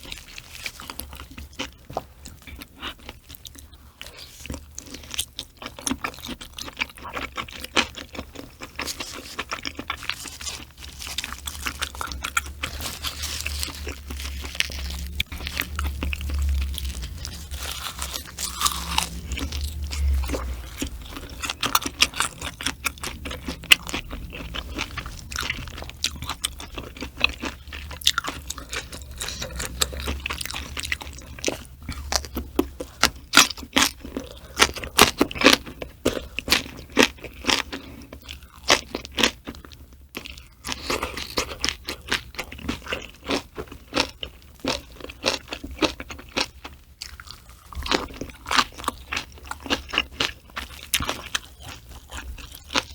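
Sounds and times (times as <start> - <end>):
person chewing crunchy food: 0.0 - 52.9
low rumble: 11.4 - 26.8.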